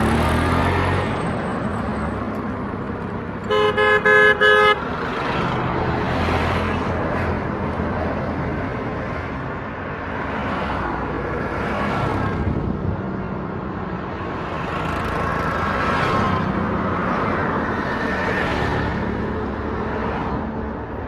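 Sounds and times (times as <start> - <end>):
vehicles passing: 0.0 - 21.0.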